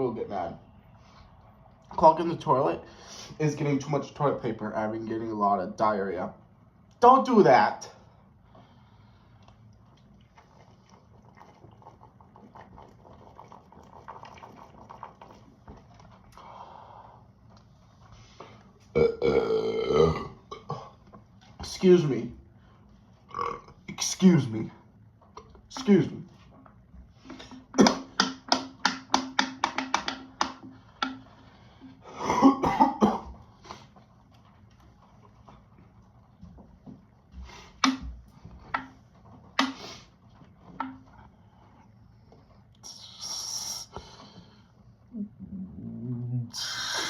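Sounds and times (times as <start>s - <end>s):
gulping and mouth clicks: 9.4s - 16.5s
rough throat sound: 18.9s - 21.0s, 23.3s - 23.9s, 45.4s - 47.0s.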